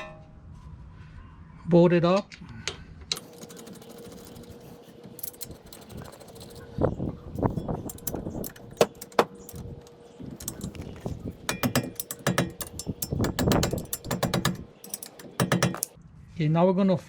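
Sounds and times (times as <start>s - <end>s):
ratchet wrench clicking: 3.2s - 16.0s.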